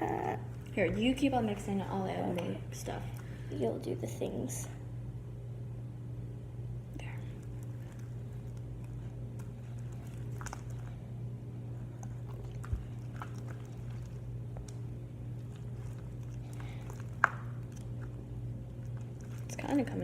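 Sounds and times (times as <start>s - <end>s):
steady low hum: 0.0s - 20.0s
slime squelching in a bowl: 7.0s - 20.0s.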